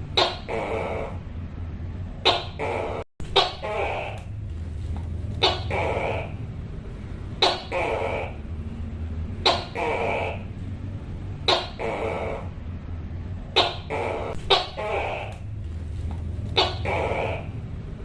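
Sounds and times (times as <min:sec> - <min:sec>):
steady low hum: 0:00.0 - 0:18.0
gecko calling: 0:00.1 - 0:01.2, 0:02.2 - 0:04.4, 0:05.4 - 0:06.5, 0:07.4 - 0:08.6, 0:09.4 - 0:10.6, 0:11.4 - 0:12.6, 0:13.5 - 0:15.6, 0:16.4 - 0:17.7.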